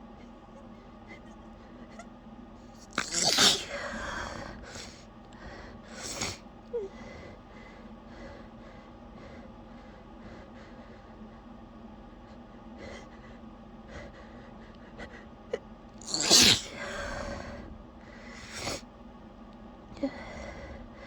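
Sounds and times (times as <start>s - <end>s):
woman sneezing: 3.0s - 3.8s, 16.1s - 16.8s.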